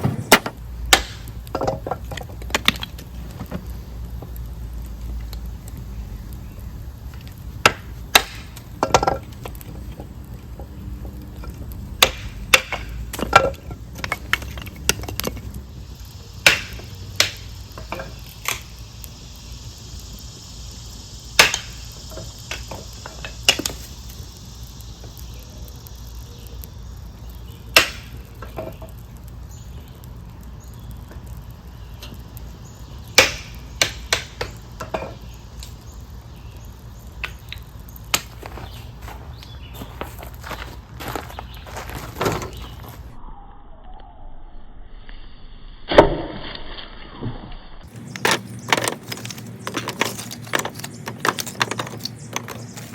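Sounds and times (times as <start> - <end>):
wood knocking and cracking: 0.0 - 6.4, 7.1 - 15.6, 16.4 - 18.8, 21.4 - 24.0, 27.7 - 32.4, 33.1 - 35.8, 37.1 - 43.1, 47.9 - 52.9
soft hiss: 0.0 - 43.2.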